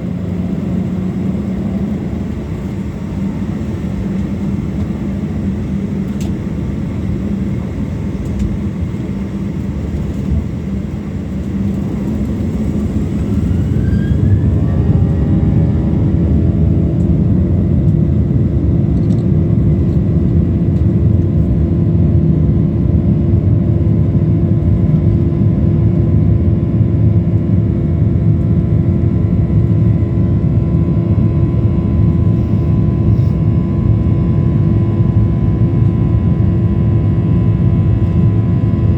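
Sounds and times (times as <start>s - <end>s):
takeoff roll rumble: 0.0s - 21.5s
jet engine whine: 0.0s - 38.9s.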